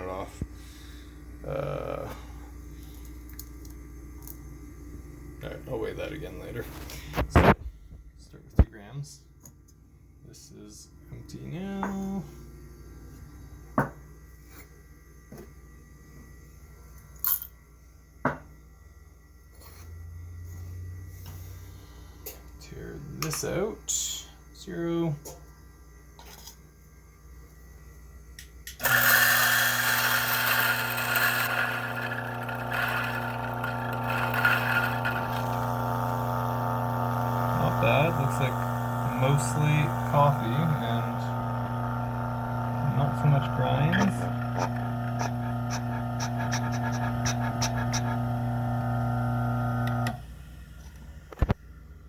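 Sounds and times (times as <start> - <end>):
coffee beans grinding: 17.2 - 17.5, 28.7 - 50.2
coffee grinder motor humming: 28.7 - 51.6.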